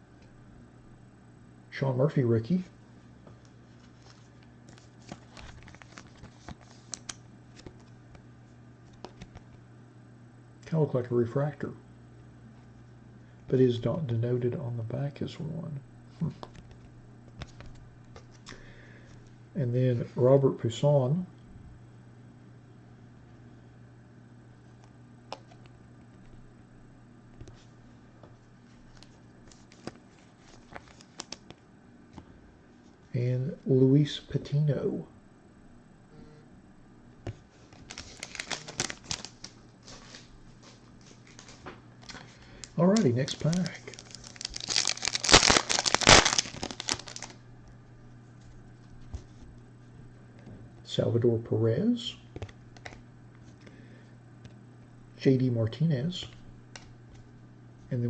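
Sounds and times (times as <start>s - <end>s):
steady low hum: 0.0s - 58.0s
cards clicking and rustling: 29.0s - 31.6s, 37.8s - 47.3s.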